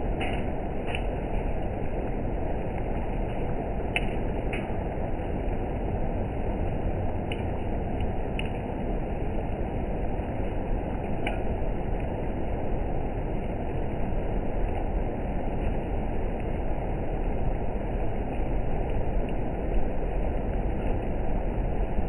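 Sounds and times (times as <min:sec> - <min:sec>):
heavy rain pouring: 0:00.0 - 0:22.0
sharp tick: 0:00.2 - 0:01.1, 0:03.9 - 0:04.7, 0:11.2 - 0:11.5.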